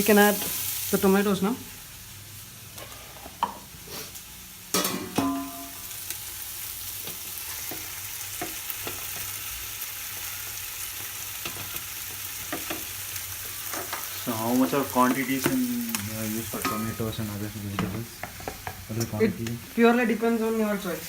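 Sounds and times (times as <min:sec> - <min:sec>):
food sizzling in a pan: 0:00.0 - 0:21.0
utensil clattering on a pan: 0:04.7 - 0:05.8.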